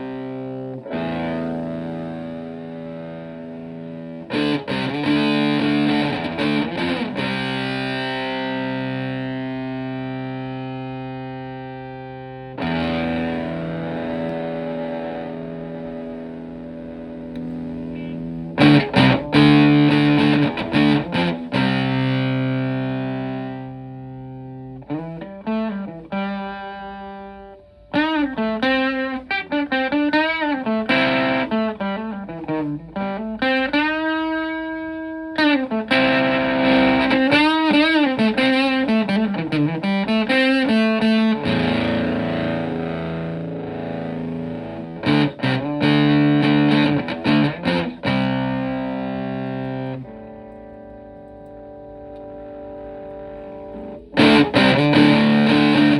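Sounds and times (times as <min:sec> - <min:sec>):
electric guitar lead with bends: 0:00.0 - 0:55.9
fuzzed electric guitar chords: 0:00.0 - 0:55.9.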